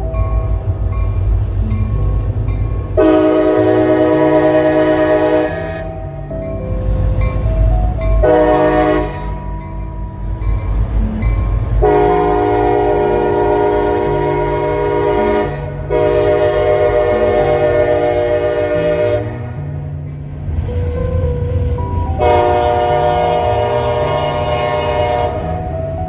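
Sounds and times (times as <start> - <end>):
diesel engine rumble: 0.0 - 26.0
locomotive air horn blasts: 3.0 - 6.0, 8.2 - 9.5, 11.8 - 19.8, 22.2 - 26.0.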